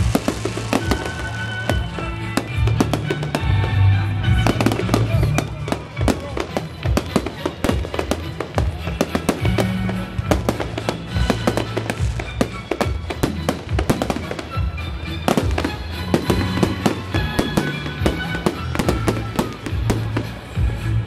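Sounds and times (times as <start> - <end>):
fireworks bangs and crackles: 0.0 - 21.0
music playing: 0.0 - 21.0.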